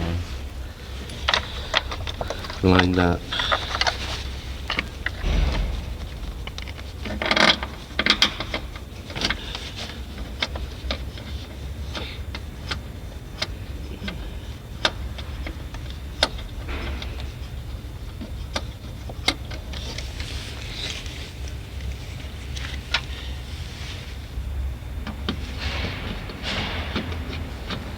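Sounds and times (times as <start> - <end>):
steady low hum: 0.0 - 27.9
tools and parts clattering: 0.8 - 12.8.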